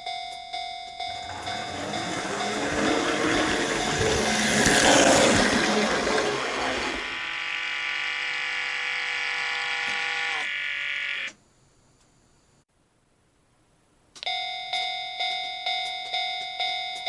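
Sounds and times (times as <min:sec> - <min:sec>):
crossing signal warning bell: 0:00.0 - 0:06.2, 0:14.3 - 0:17.0.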